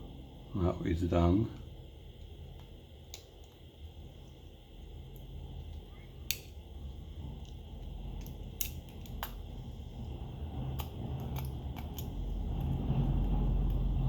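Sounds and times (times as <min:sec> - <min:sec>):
low rumble: 0:06.6 - 0:14.0.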